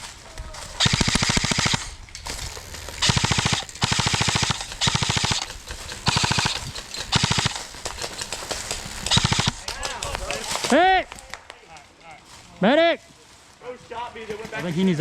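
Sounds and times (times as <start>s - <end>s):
airsoft gun firing bursts: 0.8s - 10.7s.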